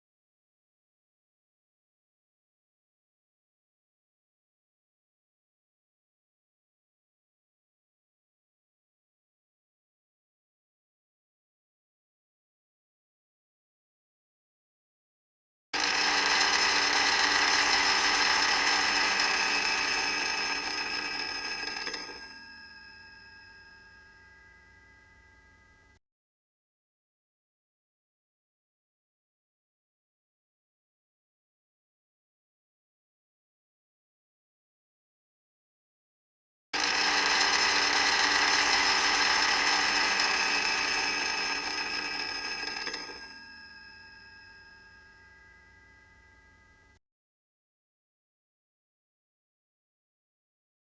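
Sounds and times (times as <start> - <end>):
electric blender motor running: 15.8 - 24.0, 36.8 - 45.0.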